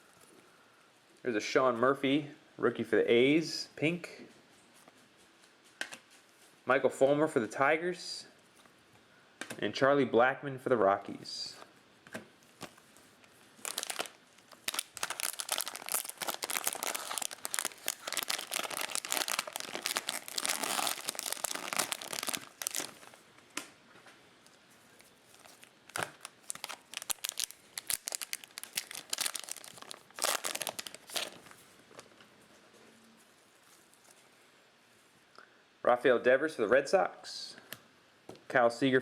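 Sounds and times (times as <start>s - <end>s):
plastic wrapper crinkling: 12.5s - 23.2s, 24.5s - 32.1s.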